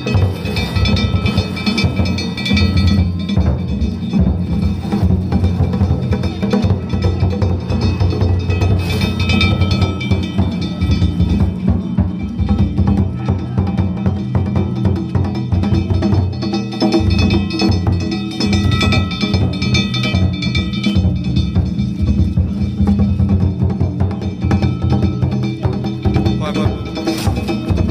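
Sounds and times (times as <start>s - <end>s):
big drum beaten fast: 0.0s - 27.9s
ringing hand gongs: 0.0s - 27.9s.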